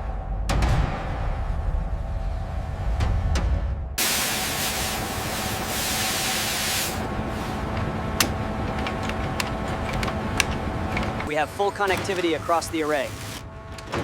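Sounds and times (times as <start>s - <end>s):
hissing jet of spray: 4.0s - 8.6s.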